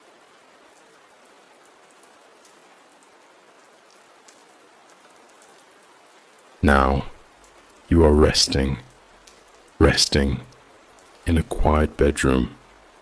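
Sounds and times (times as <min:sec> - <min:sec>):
raindrop ticks: 0:00.0 - 0:13.0
soft rain hiss: 0:00.0 - 0:13.0.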